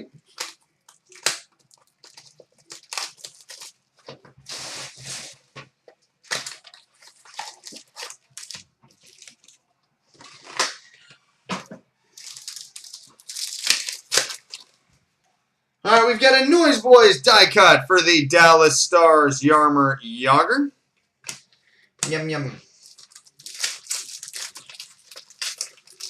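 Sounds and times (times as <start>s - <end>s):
wrappers tearing and crinkling: 0.2s - 5.4s, 6.2s - 9.6s, 12.1s - 14.8s, 22.7s - 26.0s.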